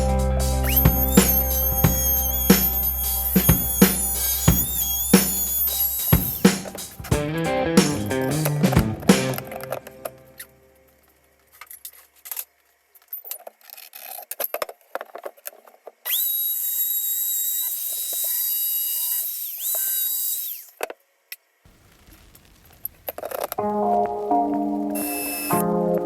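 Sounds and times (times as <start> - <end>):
electric power drill running: 0.7 - 6.8, 16.1 - 20.7.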